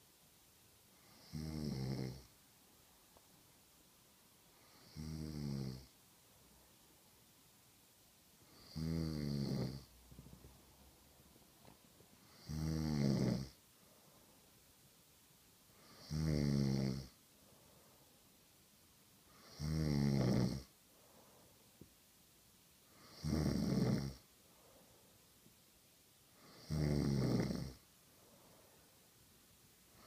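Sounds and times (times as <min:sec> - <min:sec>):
person snoring: 0:01.0 - 0:02.3, 0:04.6 - 0:06.0, 0:08.4 - 0:09.9, 0:12.2 - 0:13.6, 0:15.7 - 0:17.2, 0:19.3 - 0:20.7, 0:22.9 - 0:24.2, 0:26.4 - 0:27.8.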